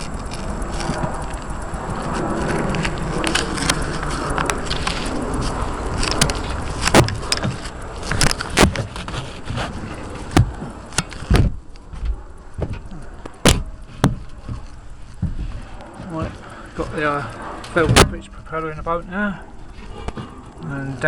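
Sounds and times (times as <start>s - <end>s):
steady rushing noise: 0.0s - 21.0s
sharp knocks and clunks: 6.2s - 9.6s, 10.3s - 16.4s, 17.8s - 18.3s.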